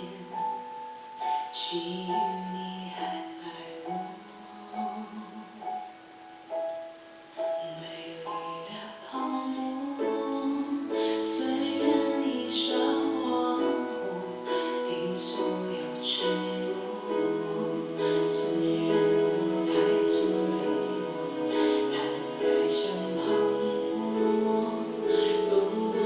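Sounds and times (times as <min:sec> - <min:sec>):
pop ballad with piano on speakers: 0:00.0 - 0:26.0.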